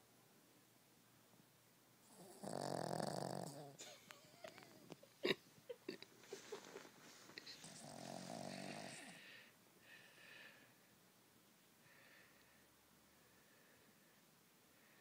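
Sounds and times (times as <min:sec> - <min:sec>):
dog snoring: 0:02.0 - 0:03.8, 0:07.5 - 0:09.3.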